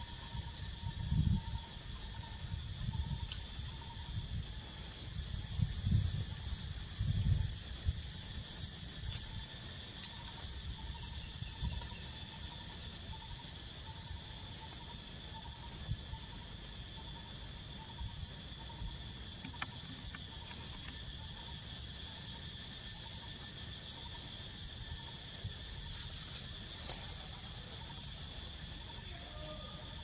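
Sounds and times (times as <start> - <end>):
high-pitched insect chorus: 0.0 - 30.0
pulsing insect trill: 0.0 - 30.0
sharp clicks: 19.4 - 21.0.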